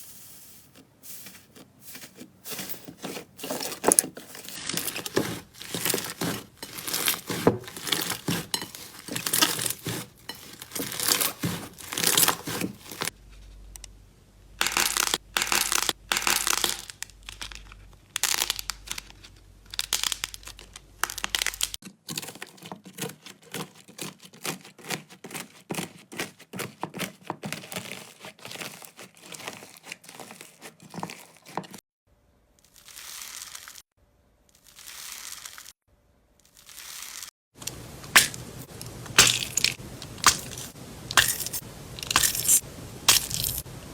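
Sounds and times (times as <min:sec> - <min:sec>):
slime crackling and popping: 0:14.6 - 0:21.8, 0:32.6 - 0:33.8, 0:34.6 - 0:35.7, 0:36.4 - 0:37.3, 0:38.1 - 0:43.7.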